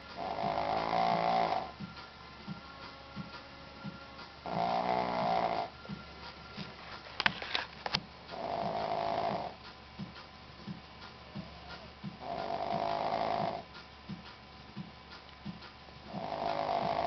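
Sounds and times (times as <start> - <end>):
dog snoring: 0.2 - 1.9, 4.4 - 5.8, 8.3 - 9.6, 11.4 - 13.8, 16.1 - 17.0.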